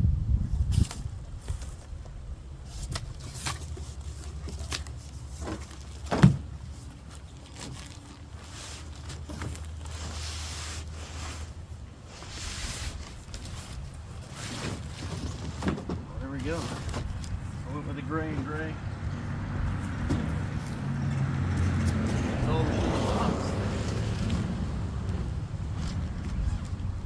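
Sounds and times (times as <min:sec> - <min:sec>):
packaging rustling: 0:03.0 - 0:11.2
thump: 0:06.1 - 0:06.5, 0:20.0 - 0:20.4.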